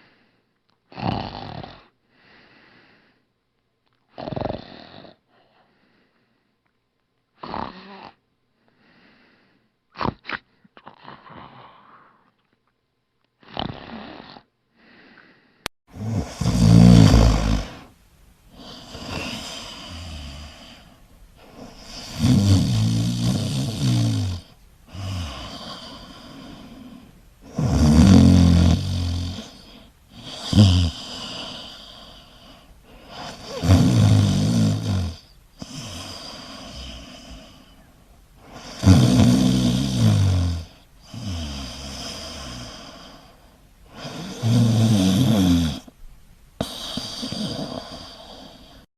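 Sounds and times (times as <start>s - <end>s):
quiet breathing: 0.0s - 0.7s, 1.7s - 3.4s, 4.8s - 6.8s, 7.8s - 12.4s, 13.8s - 48.9s
deep snoring: 0.9s - 1.9s, 4.2s - 5.2s, 15.9s - 46.0s, 46.6s - 48.9s
person snorting: 7.4s - 8.2s, 13.4s - 14.4s, 15.9s - 37.8s, 38.4s - 45.9s, 46.6s - 48.9s.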